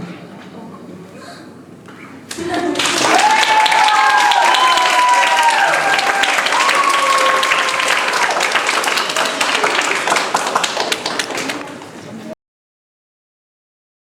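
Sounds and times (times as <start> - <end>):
audience clapping: 2.3 - 12.2.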